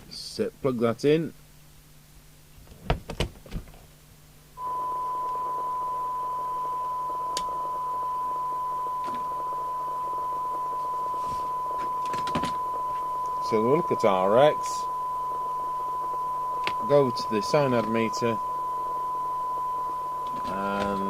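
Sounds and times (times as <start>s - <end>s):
steady test tone from speaker: 4.5s - 21.0s.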